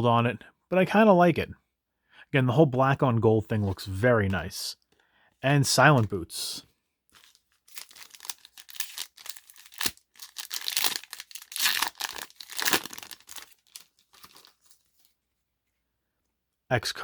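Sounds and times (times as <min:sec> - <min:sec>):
foil wrapper crinkling and tearing: 0:07.2 - 0:14.9.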